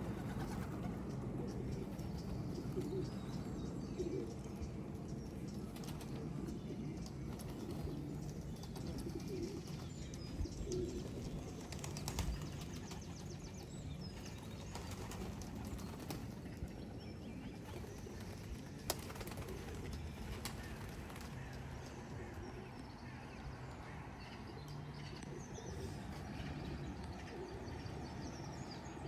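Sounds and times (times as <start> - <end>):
wings flapping: 0.0 - 1.1, 10.7 - 13.4, 14.2 - 16.9, 17.5 - 22.0
pigeons cooing: 0.0 - 23.3, 25.0 - 28.5.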